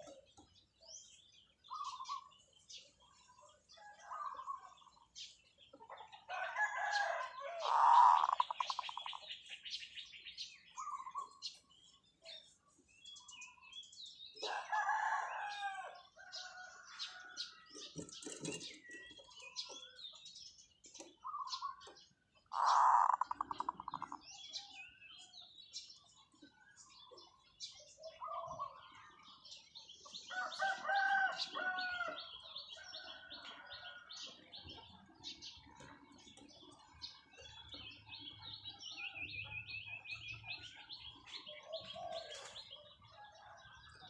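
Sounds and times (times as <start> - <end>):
dove cooing: 7.4 - 9.2, 22.5 - 24.2, 28.0 - 28.8, 41.1 - 43.5.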